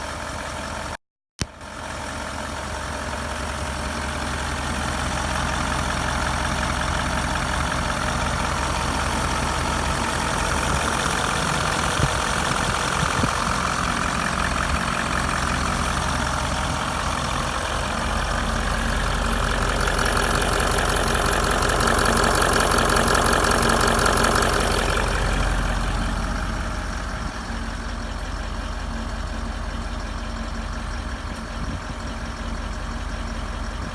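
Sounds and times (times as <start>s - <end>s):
diesel engine idling: 0.0s - 33.9s.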